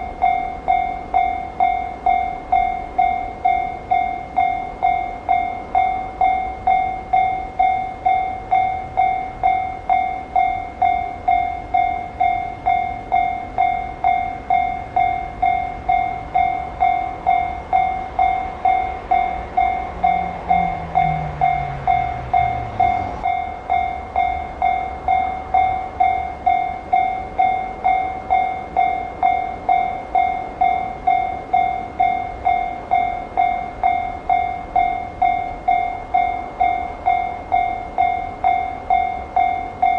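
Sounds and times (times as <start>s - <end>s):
level-crossing alarm dinging: 0.0s - 39.9s
train rumbling past: 0.0s - 39.9s
low tone falling in pitch: 19.6s - 23.2s.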